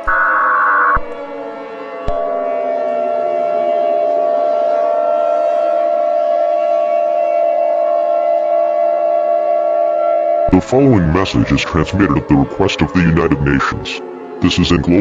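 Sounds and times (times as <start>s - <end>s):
screeching data tones: 0.0s - 1.0s
siren gliding down and up: 0.0s - 15.0s.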